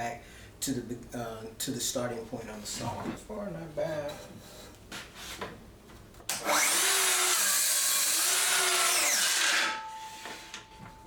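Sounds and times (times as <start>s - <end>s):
saw blade winding down: 6.3s - 9.9s
circular saw cutting: 6.4s - 10.0s.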